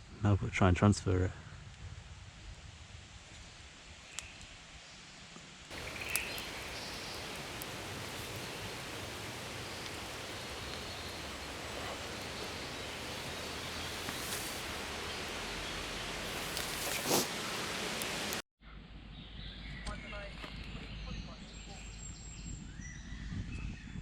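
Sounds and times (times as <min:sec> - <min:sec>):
faint clicks: 0:05.7 - 0:18.4
wind rushing through trees: 0:05.7 - 0:18.4.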